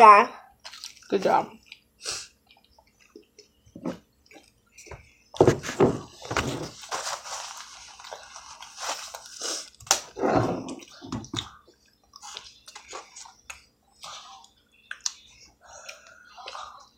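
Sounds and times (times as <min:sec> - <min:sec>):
wet chewing and lip smacking: 0:00.6 - 0:04.9, 0:09.6 - 0:16.9.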